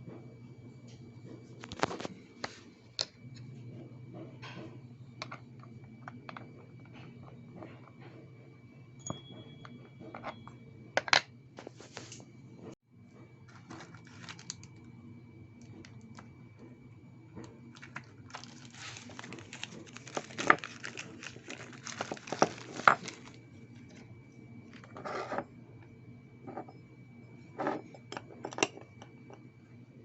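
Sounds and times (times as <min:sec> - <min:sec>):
faint high whine: 0:00.0 - 0:30.0
objects rustling by hand: 0:13.5 - 0:14.8, 0:17.7 - 0:24.0.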